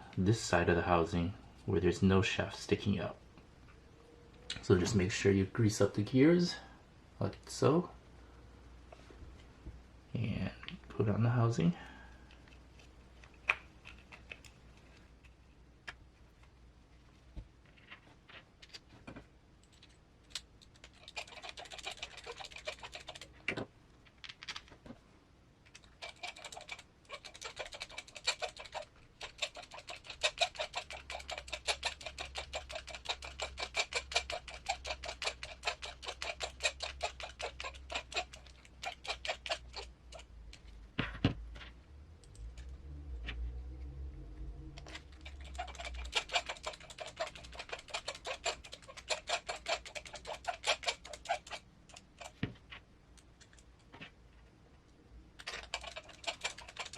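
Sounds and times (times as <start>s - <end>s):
rapid small plastic clicks: 19.6s - 24.7s, 25.6s - 40.8s, 44.8s - 52.4s, 55.4s - 56.9s
low hum: 41.4s - 45.3s.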